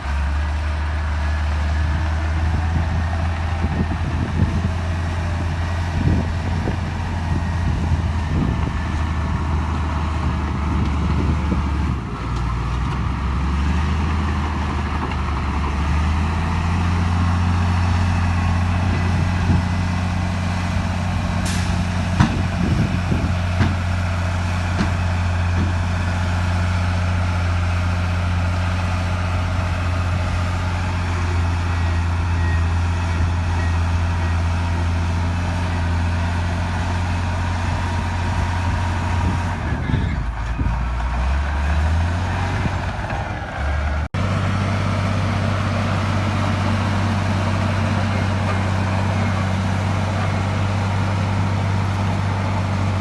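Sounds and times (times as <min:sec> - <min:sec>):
bulldozer diesel engine running: 0:00.0 - 0:53.0.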